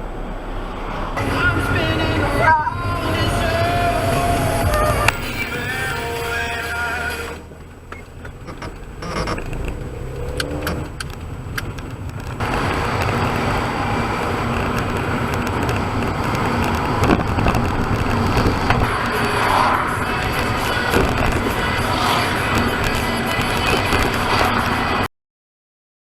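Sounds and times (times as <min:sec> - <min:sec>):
car engine rumble: 0:00.0 - 0:25.1
tyre and road noise: 0:00.0 - 0:25.1.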